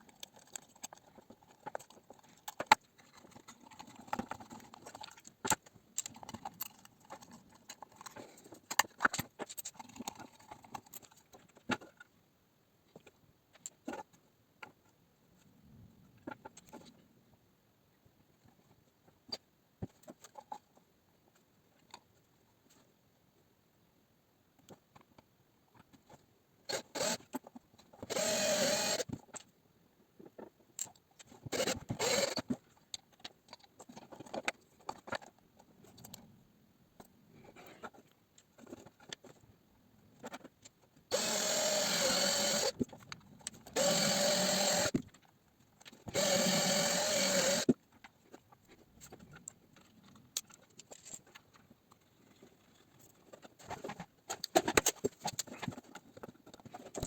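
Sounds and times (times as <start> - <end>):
small electric motor whining: 28.1 - 29.0, 31.6 - 32.4, 41.1 - 42.7, 43.7 - 45.0, 46.1 - 47.7.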